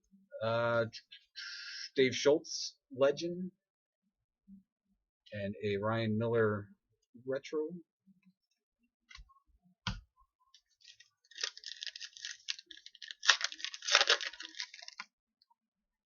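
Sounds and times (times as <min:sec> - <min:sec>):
foil wrapper crinkling and tearing: 0:10.8 - 0:15.1.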